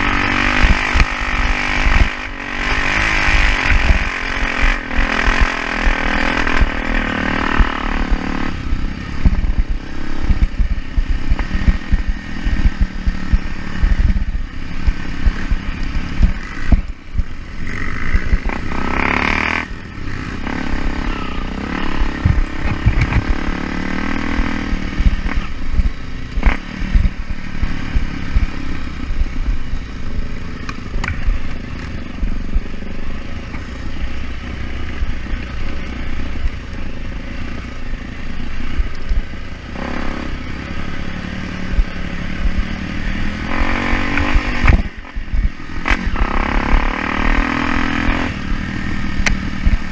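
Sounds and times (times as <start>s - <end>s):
motorcycle engine revving: 0.0s - 49.9s
knocks and clatter from bike: 22.2s - 23.5s.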